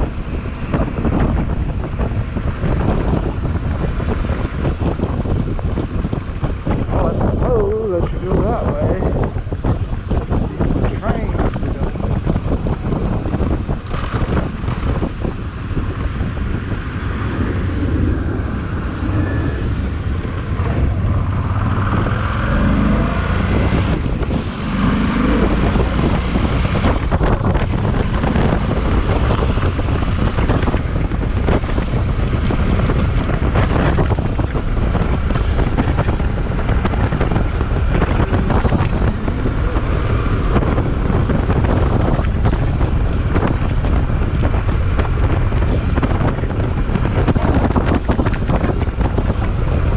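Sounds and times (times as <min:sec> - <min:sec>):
wind buffeting microphone: 0:00.0 - 0:49.9
freight train rumbling past: 0:16.3 - 0:22.2.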